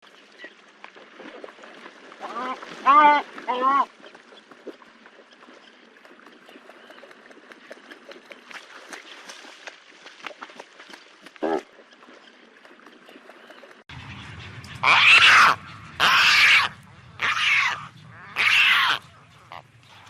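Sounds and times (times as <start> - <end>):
low steady rumble: 13.9 - 20.0
pelican squawks: 14.8 - 19.7.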